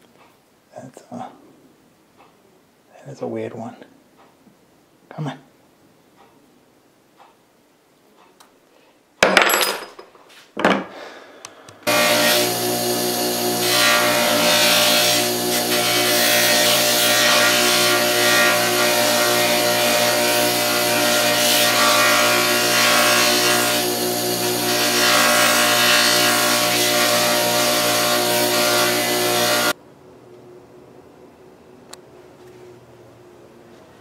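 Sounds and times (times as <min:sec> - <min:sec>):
electric power tool humming: 0:11.8 - 0:29.8.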